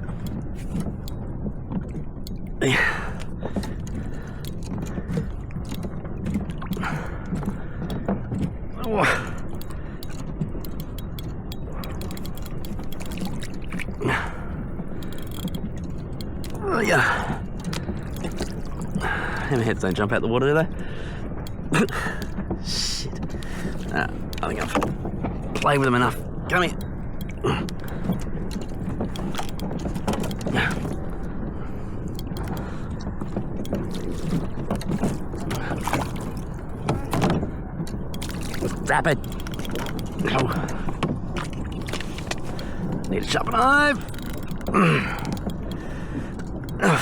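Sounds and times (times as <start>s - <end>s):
small scattered clicks: 0.0s - 47.0s
water rush: 0.0s - 47.0s
water splashing and dribbling: 0.0s - 47.0s
fishing reel whirring and clicking: 9.5s - 13.9s, 15.0s - 16.6s, 26.7s - 31.1s, 32.1s - 37.3s, 38.1s - 40.6s, 41.3s - 45.9s.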